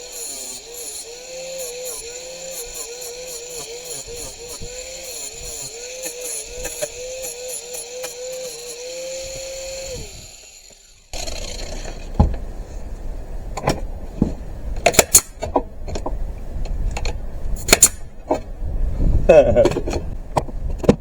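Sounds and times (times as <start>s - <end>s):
angle grinder whining: 0.0s - 12.2s.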